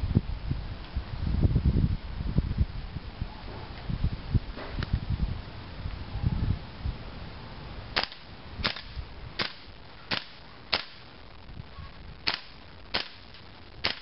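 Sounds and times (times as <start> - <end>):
airsoft rifle shots: 8.0 - 11.1, 12.2 - 14.0.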